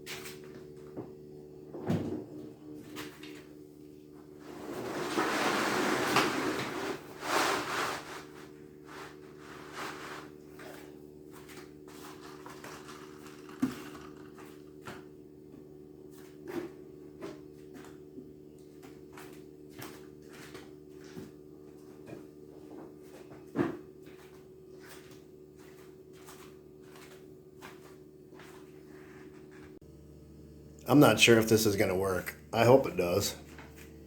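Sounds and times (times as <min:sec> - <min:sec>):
water valve humming: 0:12.2 - 0:14.8.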